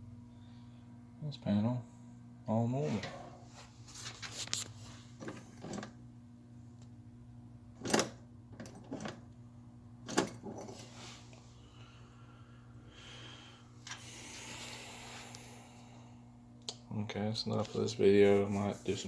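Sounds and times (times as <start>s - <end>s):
low electrical hum: 0.0s - 19.0s
handling clicks and rattles: 10.1s - 10.9s.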